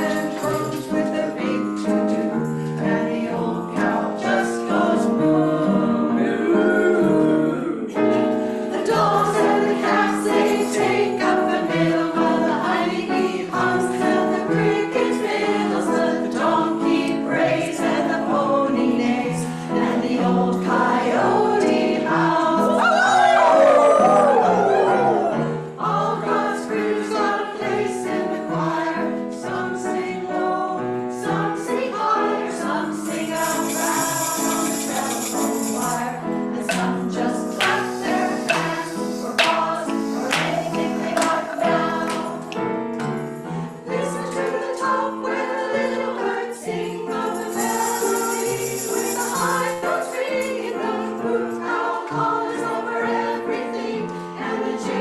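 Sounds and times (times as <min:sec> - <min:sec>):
high rattling percussion: 0:00.0 - 0:01.1, 0:33.0 - 0:42.5, 0:47.1 - 0:50.7
music with group singing: 0:00.0 - 0:55.0.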